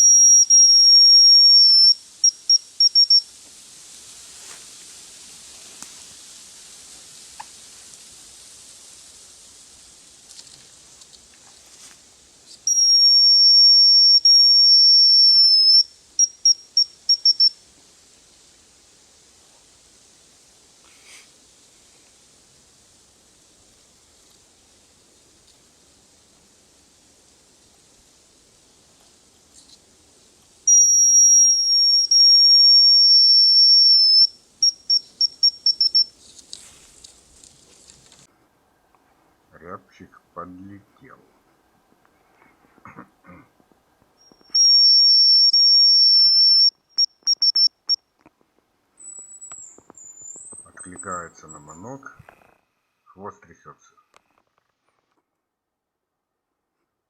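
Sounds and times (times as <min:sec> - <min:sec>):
grouse whistling song: 0:00.0 - 0:03.3, 0:12.7 - 0:17.6, 0:30.7 - 0:36.1, 0:44.2 - 0:48.0.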